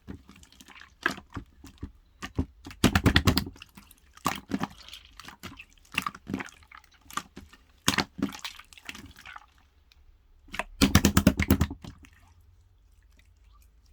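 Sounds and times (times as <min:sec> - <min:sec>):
slime wet clicks and pops: 0:10.5 - 0:11.9.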